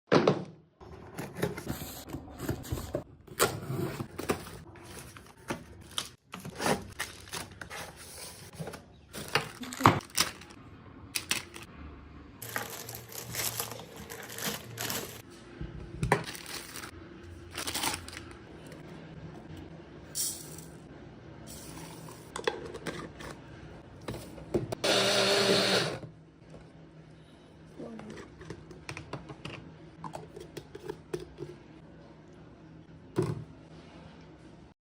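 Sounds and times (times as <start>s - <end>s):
blender motor running: 24.8s - 26.1s.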